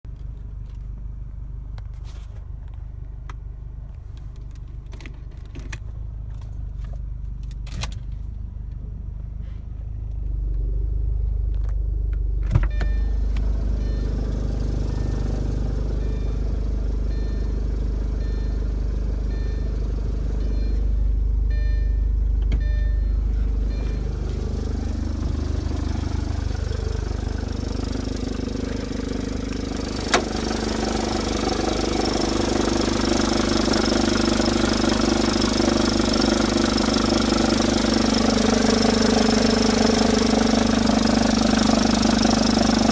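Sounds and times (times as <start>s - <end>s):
car engine rumble: 0.0s - 42.9s.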